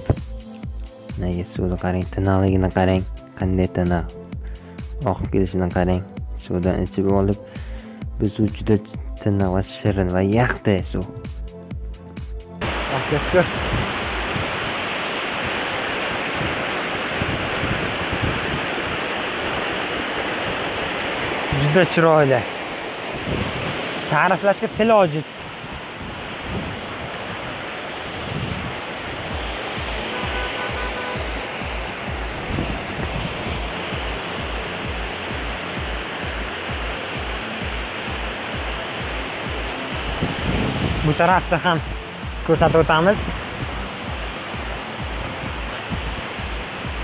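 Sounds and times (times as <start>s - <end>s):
music with deep beat: 0.0s - 9.6s, 10.5s - 12.9s, 29.3s - 47.0s
waterfall rushing: 12.6s - 47.0s.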